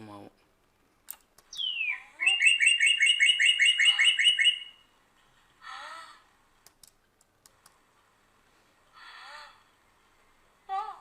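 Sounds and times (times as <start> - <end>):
bird chirping sound effect: 1.5 - 4.8.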